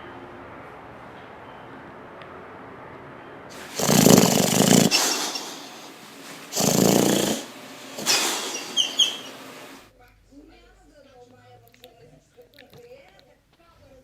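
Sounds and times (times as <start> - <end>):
dog snoring: 3.5 - 9.5
short high squeaks: 8.0 - 9.5.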